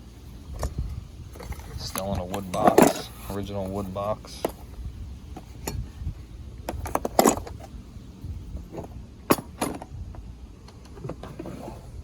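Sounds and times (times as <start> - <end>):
metal tools clinking: 1.4 - 4.6.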